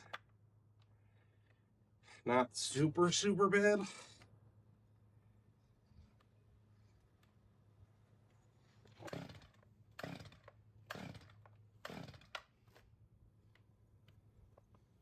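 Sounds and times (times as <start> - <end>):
chainsaw starter cord pulls: 8.8 - 12.9
engine turning over: 8.9 - 12.5.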